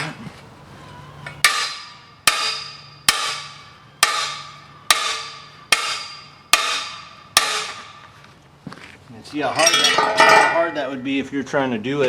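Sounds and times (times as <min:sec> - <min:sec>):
hammer striking ringing steel rim: 0:09.6 - 0:11.0.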